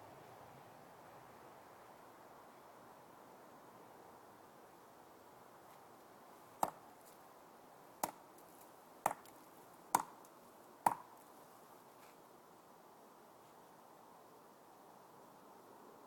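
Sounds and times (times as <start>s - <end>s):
hard object knocking on tree trunk: 9.0s - 9.3s.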